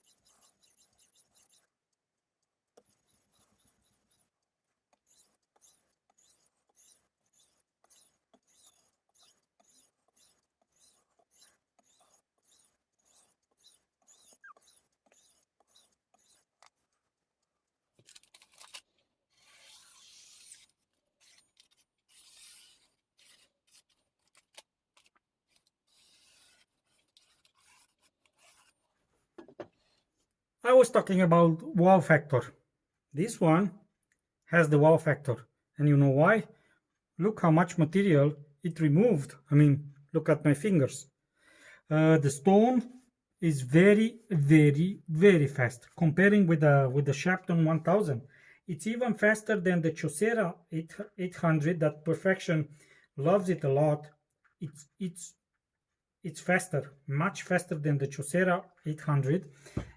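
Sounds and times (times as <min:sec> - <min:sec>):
knife scraping on whetstone: 0:00.0 - 0:01.7, 0:02.8 - 0:16.9, 0:18.0 - 0:29.0.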